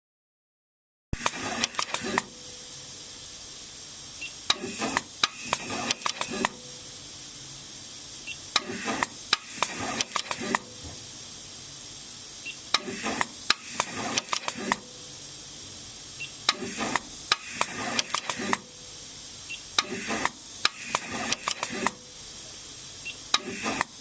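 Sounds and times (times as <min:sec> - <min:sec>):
rapid mechanical clicks: 0:01.2 - 0:02.3, 0:04.4 - 0:06.6, 0:08.5 - 0:11.1, 0:12.5 - 0:14.9, 0:16.4 - 0:18.7, 0:19.7 - 0:22.0, 0:23.2 - 0:24.0
steady hiss: 0:01.2 - 0:24.0.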